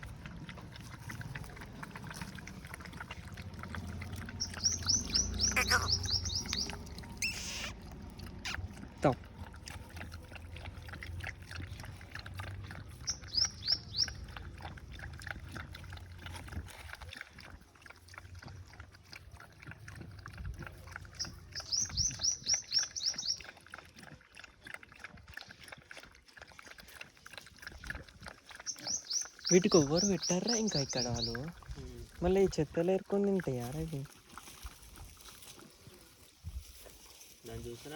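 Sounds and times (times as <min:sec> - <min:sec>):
dogs eating and lapping: 0:00.0 - 0:37.9
bird chirping: 0:04.4 - 0:07.7, 0:13.0 - 0:14.2, 0:21.2 - 0:23.5, 0:28.7 - 0:31.5.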